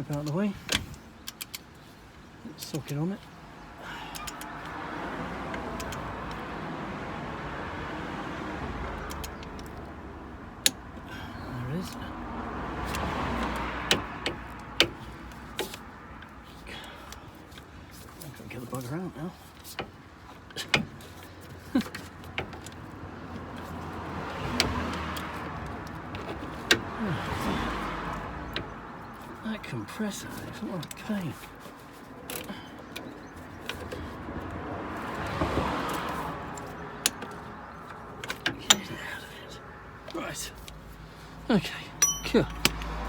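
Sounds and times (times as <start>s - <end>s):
socket wrench clicking: 4.1s - 4.6s, 5.6s - 6.4s, 9.0s - 9.8s
rustling handling noise: 30.1s - 34.2s
sharp metal knocks: 42.0s - 43.0s.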